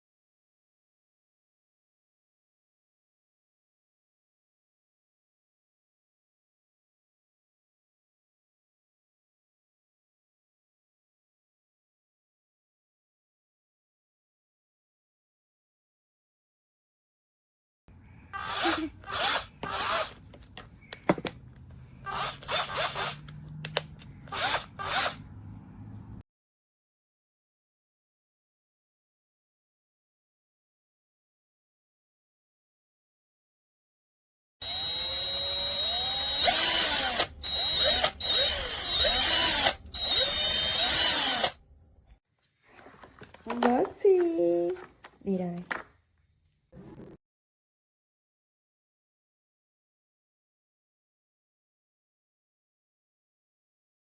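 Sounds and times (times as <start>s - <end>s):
cordless drill running: 18.4s - 20.2s, 22.1s - 23.4s, 24.3s - 25.2s, 34.6s - 41.6s.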